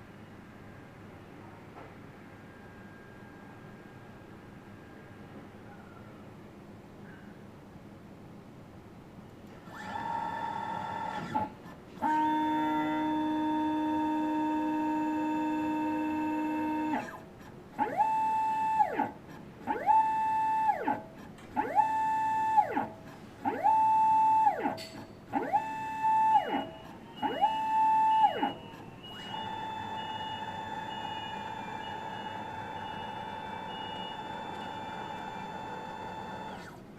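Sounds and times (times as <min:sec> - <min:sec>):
motor whine sweeping in pitch: 0:09.7 - 0:17.2, 0:17.8 - 0:24.8, 0:25.4 - 0:36.8.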